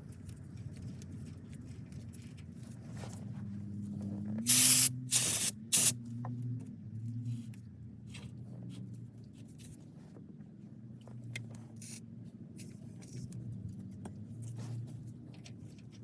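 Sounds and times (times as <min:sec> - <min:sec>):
clicks and scrapes on metal parts: 0:04.4 - 0:06.0, 0:11.3 - 0:12.0.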